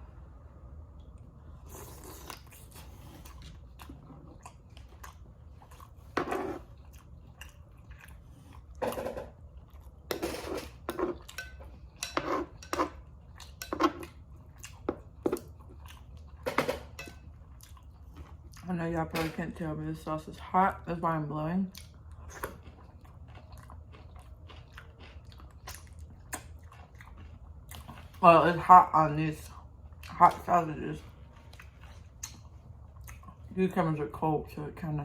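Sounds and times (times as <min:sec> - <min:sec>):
low steady hum: 0:00.0 - 0:35.0
close chewing and lip-smacking: 0:01.0 - 0:10.1, 0:13.0 - 0:16.4, 0:17.3 - 0:18.7, 0:21.6 - 0:28.2, 0:31.2 - 0:33.5.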